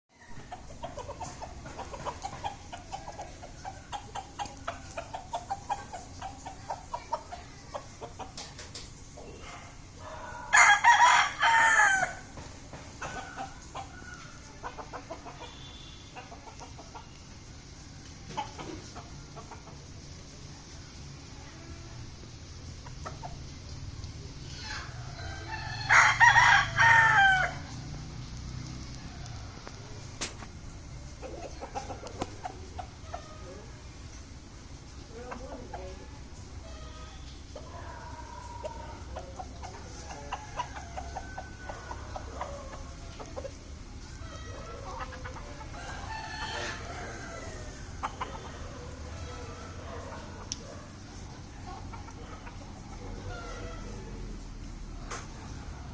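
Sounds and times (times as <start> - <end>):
faint clucking: 0.4 - 10.5, 13.0 - 17.5, 29.8 - 33.6, 36.6 - 55.2
rooster crowing: 10.0 - 12.3, 24.5 - 27.8, 36.6 - 50.9, 52.1 - 54.3.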